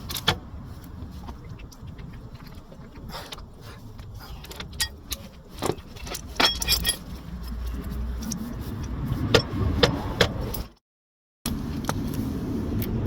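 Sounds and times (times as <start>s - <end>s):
low rumbling handling noise: 0.0s - 10.8s
metal parts and tools clinking: 4.3s - 9.5s
jingling ring of metal: 4.8s - 7.2s.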